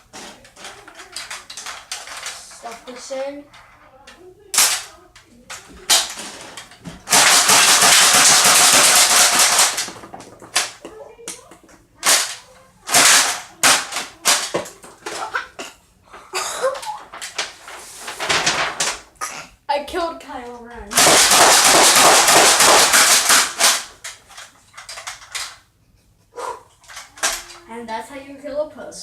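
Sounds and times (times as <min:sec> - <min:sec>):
toy dart blaster shots: 0:07.0 - 0:10.0, 0:12.0 - 0:15.4, 0:20.9 - 0:24.0.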